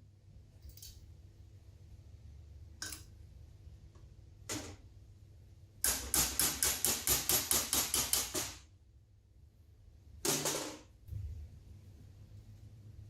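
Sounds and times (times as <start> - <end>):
rapid sharp knocks: 5.9 - 8.6.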